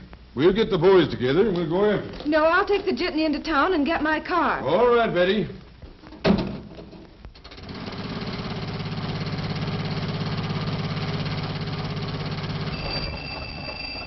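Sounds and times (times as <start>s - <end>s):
bus engine chugging: 9.8s - 14.0s.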